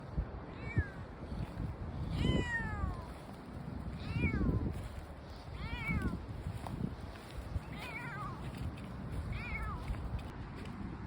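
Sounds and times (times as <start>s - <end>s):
cat meowing: 2.2s - 3.1s, 4.0s - 4.6s, 5.6s - 6.2s, 7.7s - 8.4s, 9.3s - 9.9s.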